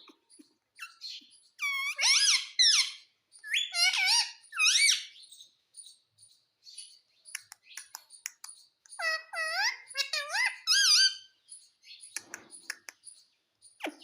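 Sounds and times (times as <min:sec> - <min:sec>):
parrot squeaky calls: 0:00.0 - 0:05.5, 0:07.7 - 0:12.9.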